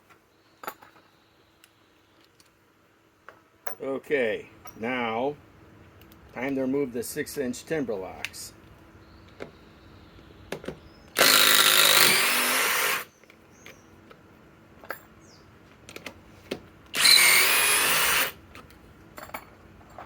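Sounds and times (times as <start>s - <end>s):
impact driver running: 11.2s - 13.1s, 16.9s - 18.4s.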